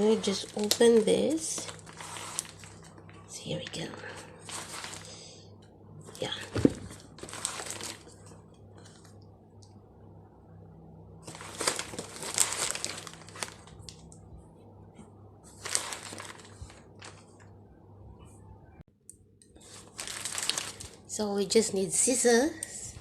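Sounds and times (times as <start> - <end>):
plastic packaging crinkling: 0.0 - 5.2, 6.2 - 8.2, 11.2 - 14.1, 15.5 - 17.6, 19.6 - 21.1
faint low hum: 0.0 - 23.0.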